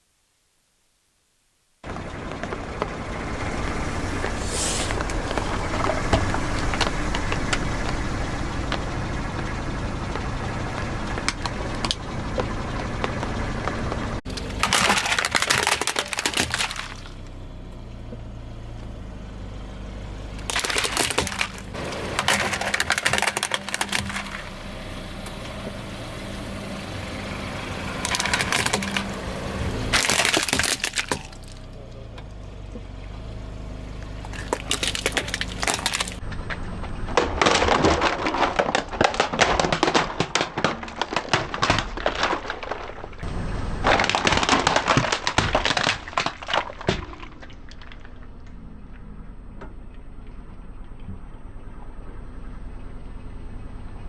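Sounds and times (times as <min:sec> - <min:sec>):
car engine running low: 0:01.8 - 0:54.0
tyre crushing crunchy objects: 0:11.0 - 0:17.4, 0:20.4 - 0:31.9, 0:34.0 - 0:48.6.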